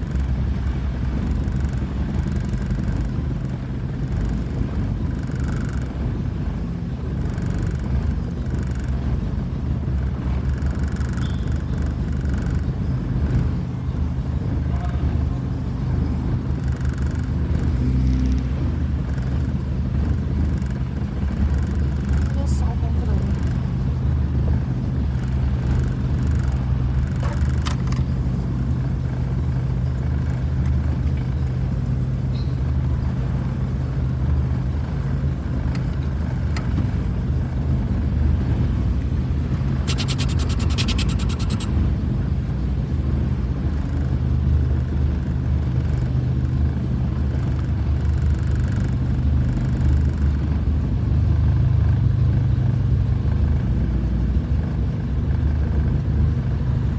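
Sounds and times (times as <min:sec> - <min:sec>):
rapid ticking: 0:39.9 - 0:41.7.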